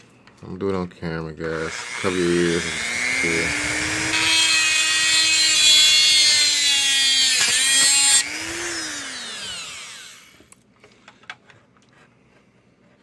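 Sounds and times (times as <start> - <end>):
rotary tool cutting: 1.6 - 10.5
motor winding down: 1.7 - 10.5.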